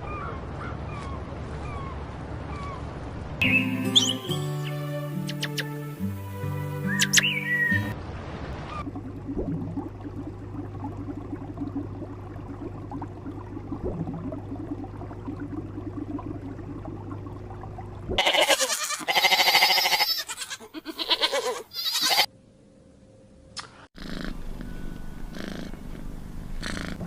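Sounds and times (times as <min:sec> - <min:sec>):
low steady hum: 0:08.8 - 0:18.5, 0:22.3 - 0:27.0
sheep bleating loudly: 0:18.2 - 0:22.3.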